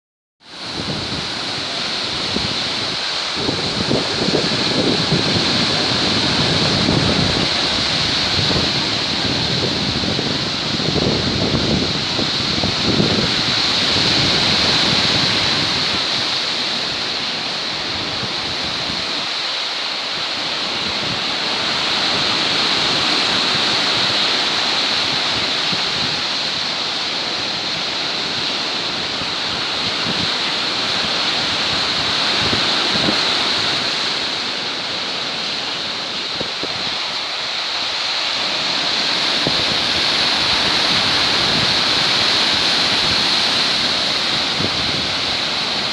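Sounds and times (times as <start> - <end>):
waves breaking on shore: 0.4 - 45.9
wind buffeting microphone: 0.5 - 19.5, 20.1 - 45.9.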